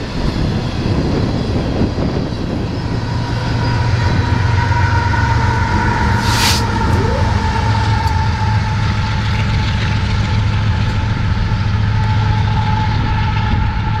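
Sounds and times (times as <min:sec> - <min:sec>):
freight train rumbling past: 0:00.0 - 0:14.0
thin high-pitched tone: 0:06.1 - 0:08.1.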